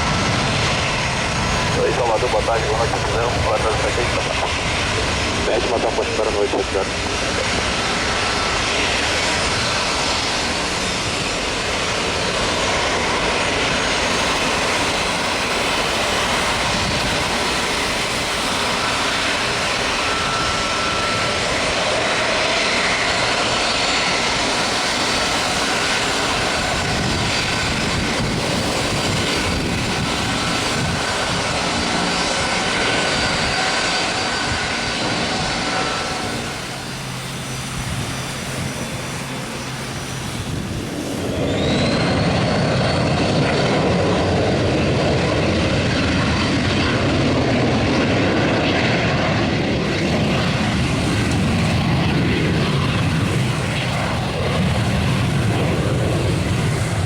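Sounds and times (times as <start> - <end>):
jet engines rushing: 0.0 - 57.0
faint high whine: 13.9 - 23.0, 33.2 - 43.2.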